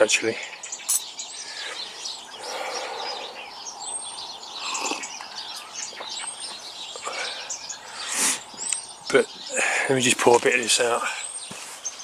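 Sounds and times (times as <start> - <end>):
small birds chirping: 0.0 - 12.0
thin whistled bird notes: 0.4 - 9.6.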